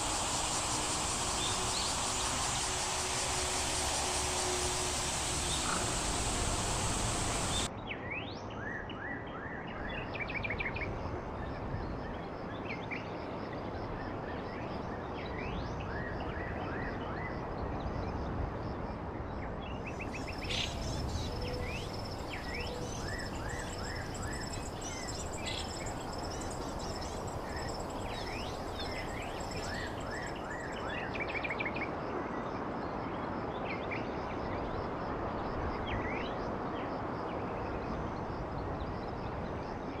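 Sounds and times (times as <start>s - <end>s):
bright rushing noise: 0.0s - 7.7s, 20.2s - 30.9s
songbirds chirping and trilling: 0.0s - 7.7s, 20.0s - 31.7s
steady rushing background noise: 0.0s - 7.7s, 19.9s - 40.0s.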